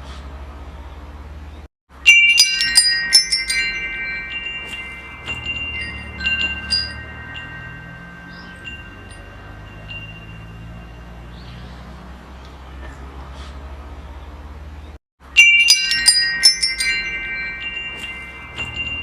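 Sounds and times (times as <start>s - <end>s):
wind chimes ringing: 1.9s - 12.1s, 15.2s - 19.0s.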